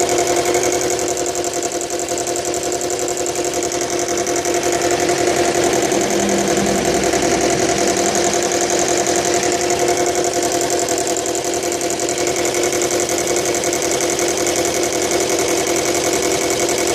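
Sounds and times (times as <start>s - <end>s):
engine running with rattle: 0.0s - 16.9s.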